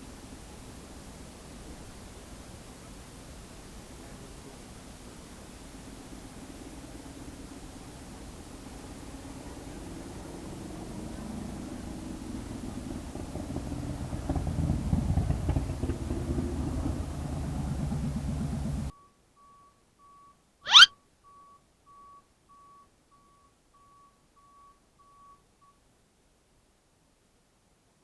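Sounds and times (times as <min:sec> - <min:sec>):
vehicle engine and road noise: 0:05.0 - 0:18.9
faint short beeps: 0:18.9 - 0:25.8
quick rising sweep: 0:20.7 - 0:20.9.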